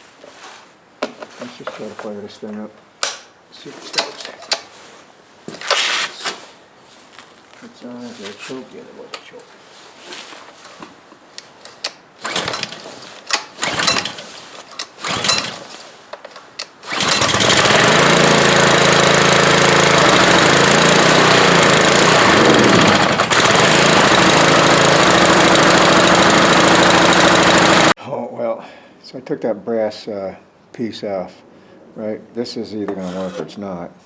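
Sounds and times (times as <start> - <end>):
recoil starter pulls: 11.8 - 28.0
small engine running: 13.6 - 14.2, 15.0 - 15.6, 16.9 - 28.0.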